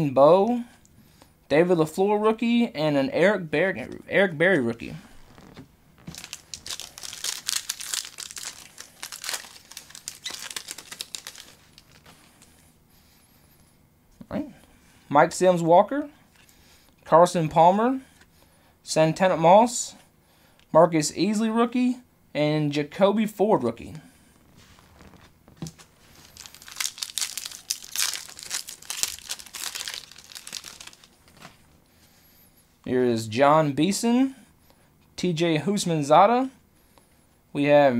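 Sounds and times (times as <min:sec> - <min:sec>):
wrapper crinkling and tearing: 0:05.3 - 0:12.5, 0:24.8 - 0:31.6.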